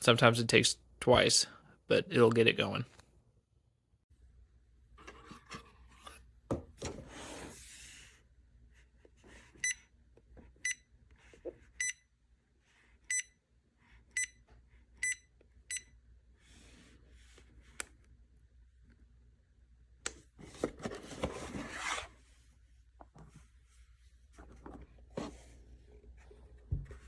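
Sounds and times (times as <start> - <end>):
rubbing and handling noise: 20.3 - 27.0.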